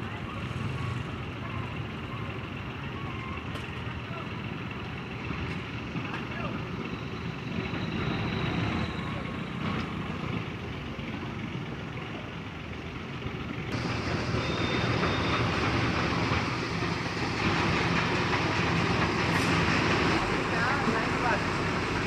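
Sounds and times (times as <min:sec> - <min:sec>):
diesel machinery droning: 0:00.0 - 0:22.0
loud noisy rumble: 0:13.0 - 0:22.0.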